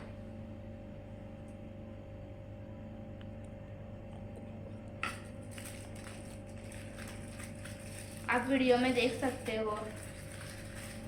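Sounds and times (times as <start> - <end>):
low electrical hum: 0.0 - 11.0
aluminium foil crinkling: 5.1 - 11.0.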